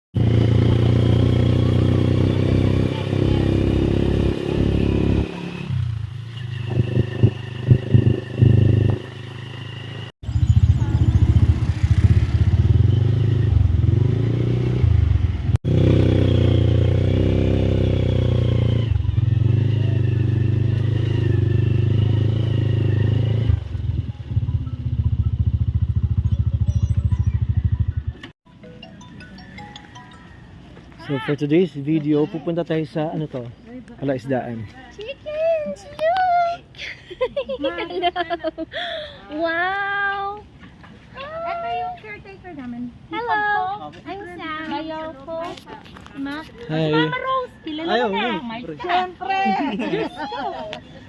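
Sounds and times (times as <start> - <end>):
motor vehicle droning: 0.2 - 28.4.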